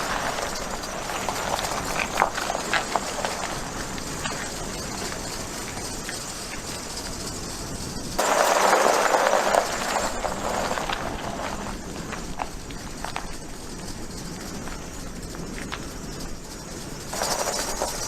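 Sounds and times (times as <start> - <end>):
pickup truck driving slowly: 0.0 - 18.0.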